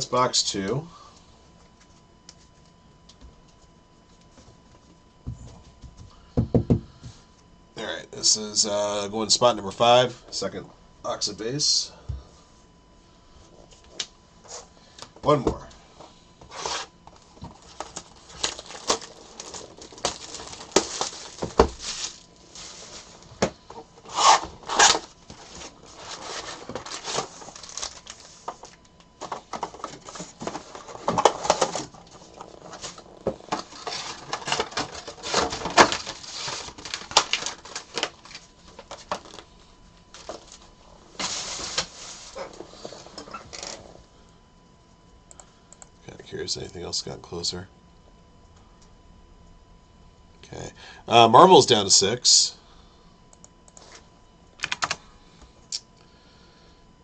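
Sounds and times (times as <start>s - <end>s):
cards and packaging rustling: 16.5s - 23.3s, 24.0s - 39.5s.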